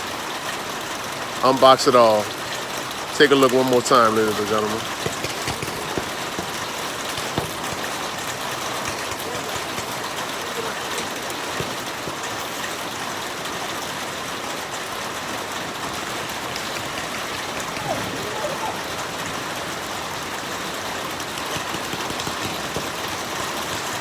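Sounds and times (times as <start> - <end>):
heavy rain pouring: 0.0 - 24.0
sharp clicks: 15.8 - 24.0.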